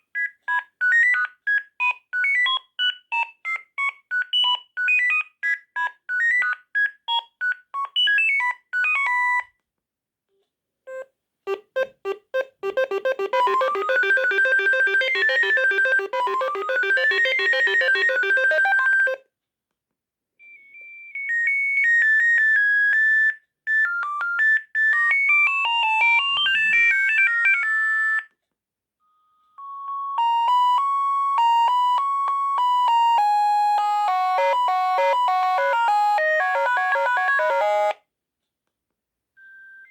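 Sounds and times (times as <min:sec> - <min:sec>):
synthesized polyphonic ringtones: 0:11.5 - 0:19.2.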